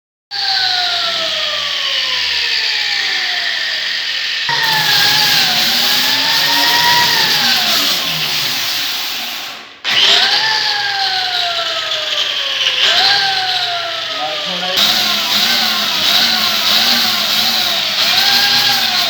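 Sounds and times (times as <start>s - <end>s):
glass door squealing on pivot: 4.5s - 8.7s.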